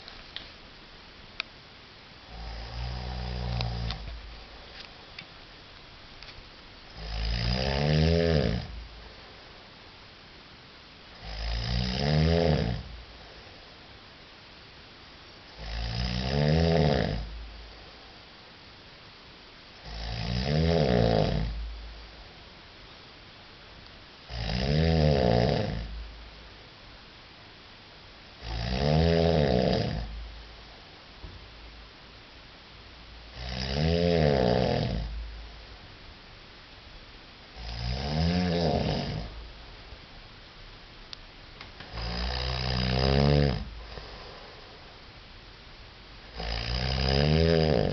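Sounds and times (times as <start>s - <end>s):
man snoring: 2.3s - 4.1s, 7.0s - 8.8s, 11.2s - 12.9s, 15.5s - 17.3s, 19.8s - 21.6s, 24.3s - 26.0s, 28.4s - 30.2s, 33.3s - 35.1s, 37.6s - 39.4s, 41.9s - 44.8s, 46.3s - 47.9s
quiet breathing: 8.4s - 9.9s, 12.8s - 14.0s, 17.1s - 18.5s, 41.8s - 45.4s.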